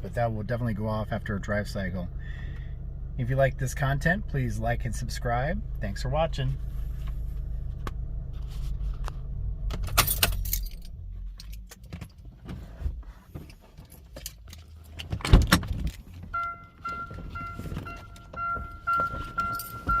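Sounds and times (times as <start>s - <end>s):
car keys jangling: 9.8s - 12.2s, 13.6s - 20.0s
short steady beeps: 16.3s - 20.0s.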